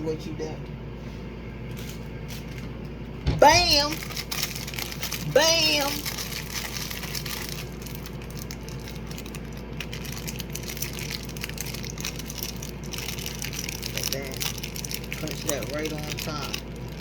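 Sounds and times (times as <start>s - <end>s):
steady low hum: 0.0s - 17.0s
granola bar crackling when crushed: 3.6s - 17.0s.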